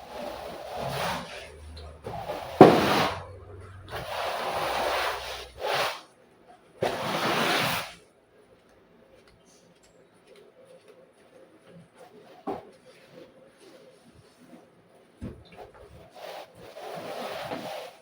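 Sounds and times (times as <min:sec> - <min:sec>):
cloth wiping floor: 0:16.1 - 0:18.0.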